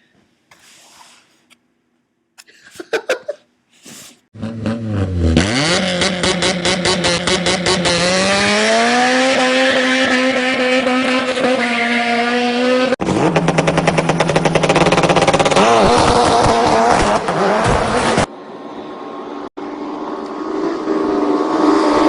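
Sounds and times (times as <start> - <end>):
engine revving: 4.3 - 18.3, 19.2 - 22.0.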